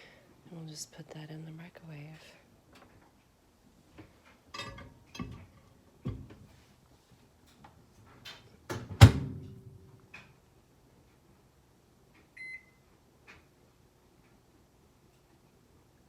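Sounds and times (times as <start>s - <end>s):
microwave door banging shut: 8.7s - 9.6s
keypad beep: 12.4s - 12.7s.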